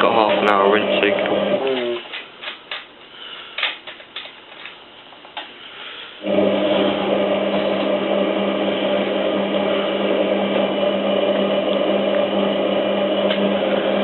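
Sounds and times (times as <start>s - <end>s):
washing machine motor humming: 0.0s - 2.8s, 6.2s - 14.0s.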